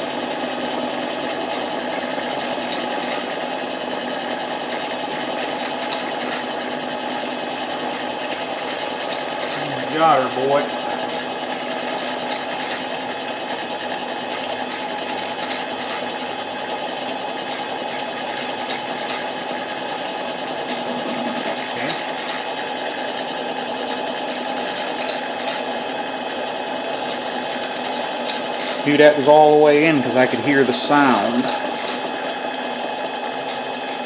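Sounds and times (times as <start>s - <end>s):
lathe running: 0.0s - 34.0s.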